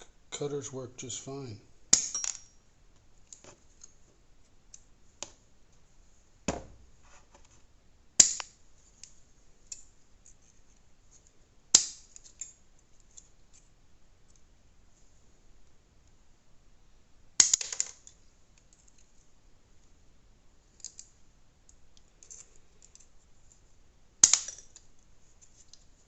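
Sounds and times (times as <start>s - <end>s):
wire cutters snapping wire: 8.2s - 8.5s, 17.4s - 17.8s, 24.2s - 24.8s.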